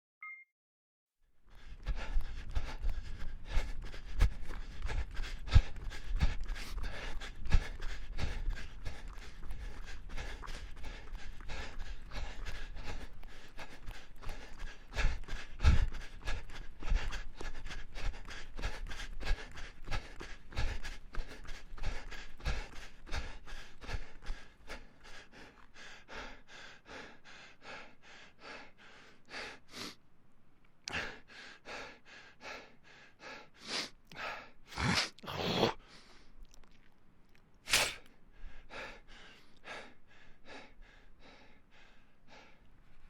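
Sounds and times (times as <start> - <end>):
deep gasping breaths: 1.5 - 30.0, 30.9 - 36.4, 37.7 - 43.0
person panting: 1.5 - 30.0, 30.9 - 36.3, 37.7 - 43.0.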